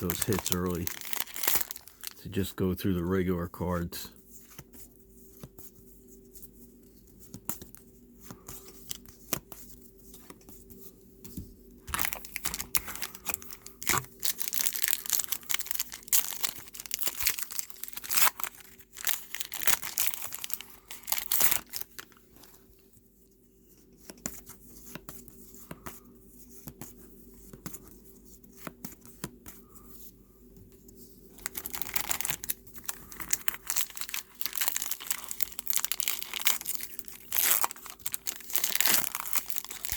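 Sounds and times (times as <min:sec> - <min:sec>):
foil wrapper tearing and crinkling: 0:00.0 - 0:02.4, 0:11.9 - 0:22.4, 0:31.4 - 0:39.9.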